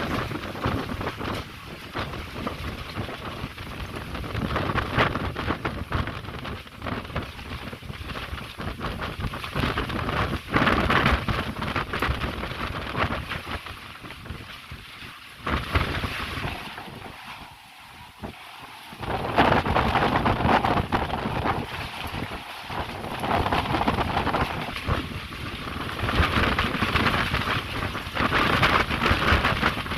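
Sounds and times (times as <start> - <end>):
gusting wind: 0.0 - 29.9
heavy rain: 0.0 - 29.9.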